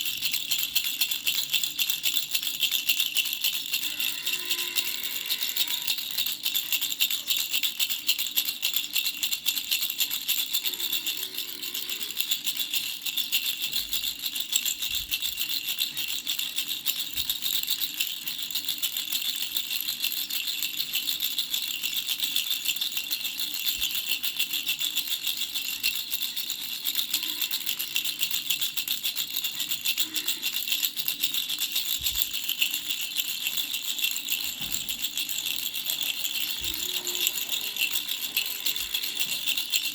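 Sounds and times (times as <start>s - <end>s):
baby rattle shaking: 0.0s - 39.9s.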